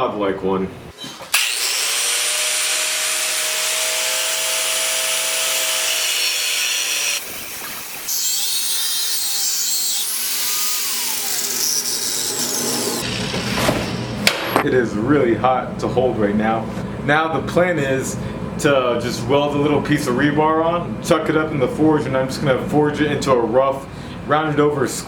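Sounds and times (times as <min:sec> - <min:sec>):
power tool cutting steel: 0:01.3 - 0:14.3.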